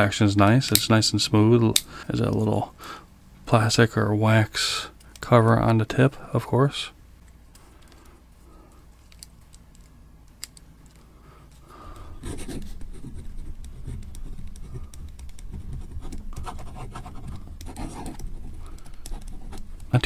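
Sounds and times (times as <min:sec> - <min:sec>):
pen clicks: 0:11.8 - 0:20.0
pen scratching on paper: 0:12.0 - 0:20.0.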